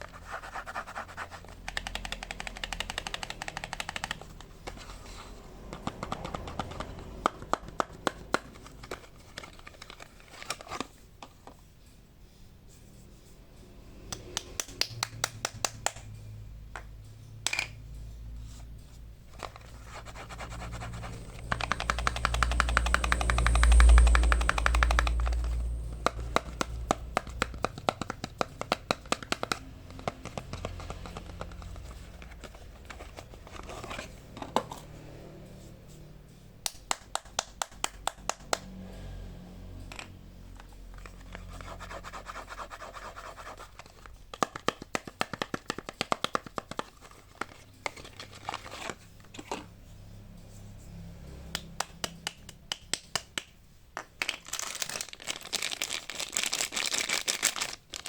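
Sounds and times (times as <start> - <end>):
wrappers crinkling and tearing: 54.2 - 58.0.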